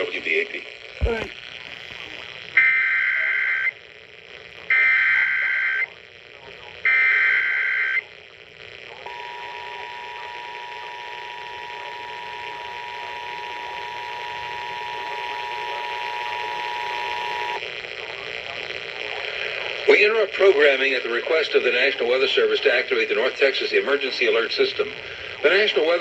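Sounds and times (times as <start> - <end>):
two-tone attention signal: 9.1 - 17.6.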